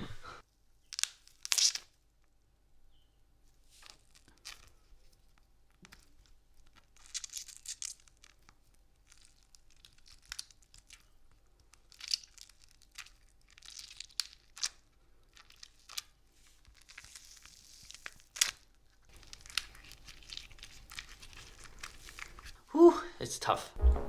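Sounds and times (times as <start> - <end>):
fruit being crushed and torn: 0.9 - 2.0, 5.7 - 22.5.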